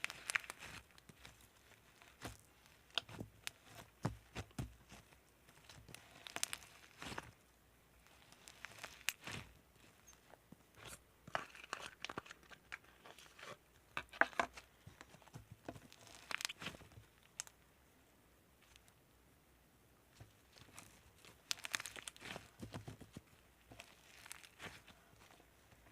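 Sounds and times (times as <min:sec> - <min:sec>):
slime crackling and tearing: 0:00.0 - 0:07.4, 0:08.0 - 0:10.2, 0:15.9 - 0:17.5, 0:20.5 - 0:25.4.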